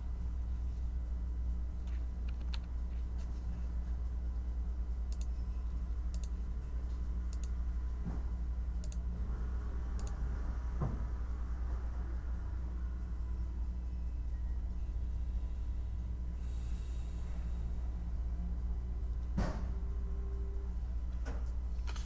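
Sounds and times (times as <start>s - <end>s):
low background hum: 0.0s - 22.0s
computer keyboard keystrokes: 2.2s - 2.7s, 5.1s - 5.3s, 6.1s - 6.4s, 7.3s - 7.5s.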